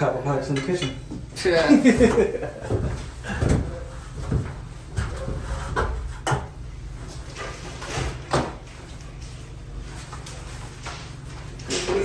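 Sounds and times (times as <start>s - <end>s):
objects knocking and clunking: 0.5s - 6.6s.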